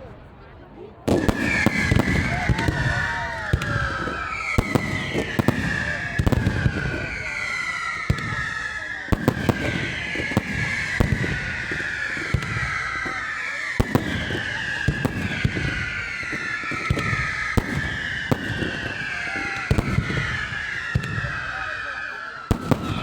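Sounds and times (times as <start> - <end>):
fireworks bangs: 1.0 - 23.0
high whistling tone sliding down: 1.3 - 14.6.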